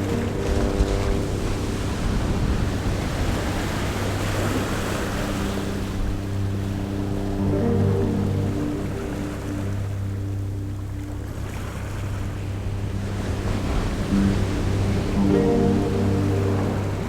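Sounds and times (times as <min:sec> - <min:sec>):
ocean waves rolling in: 0:00.0 - 0:17.0
soft sustained music tones: 0:00.0 - 0:17.0.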